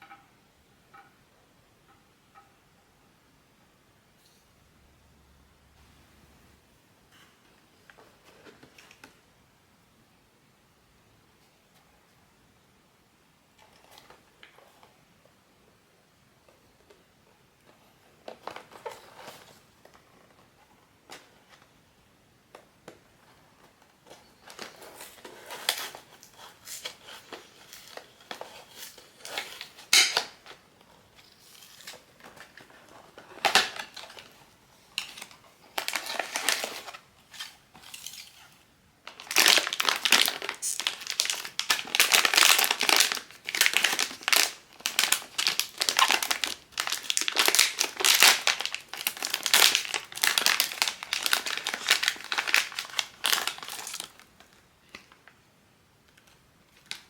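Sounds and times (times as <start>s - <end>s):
plastic packaging crinkling: 24.0s - 55.3s, 56.2s - 57.0s.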